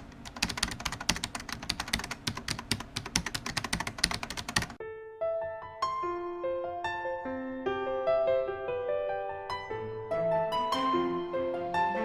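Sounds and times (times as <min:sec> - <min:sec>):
rapid typing on computer keyboard: 0:00.0 - 0:04.8.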